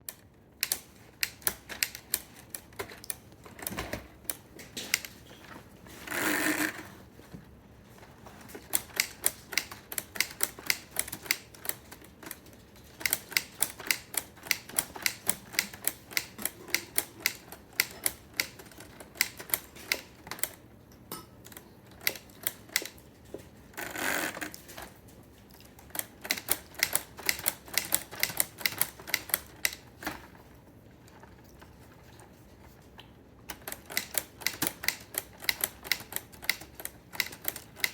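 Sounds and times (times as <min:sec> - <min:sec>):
typewriter keys clacking: 0:08.3 - 0:20.7, 0:21.5 - 0:30.4, 0:33.5 - 0:37.9.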